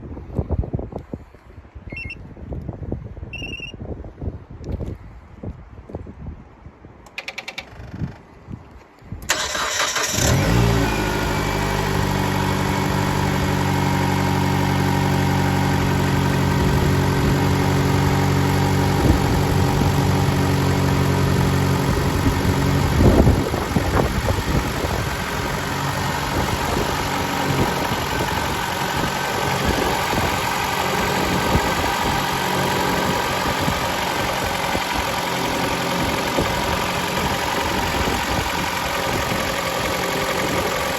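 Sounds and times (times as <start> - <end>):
car engine cranking and starting: 9.2 - 40.9
car engine idling with knock: 11.8 - 40.9.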